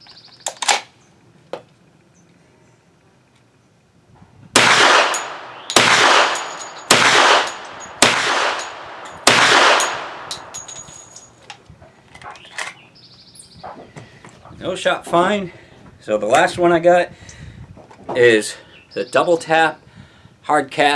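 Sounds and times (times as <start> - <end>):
carbine gunshots with echo: 4.6 - 11.2.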